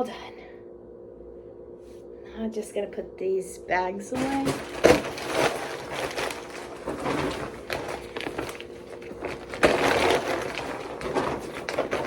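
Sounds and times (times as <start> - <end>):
grocery bags rustling: 4.0 - 12.0.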